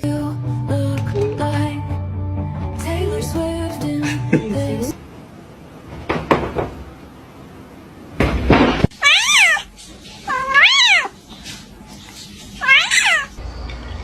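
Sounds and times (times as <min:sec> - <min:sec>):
cat meowing: 0:09.0 - 0:09.7, 0:10.3 - 0:11.2, 0:12.6 - 0:13.3.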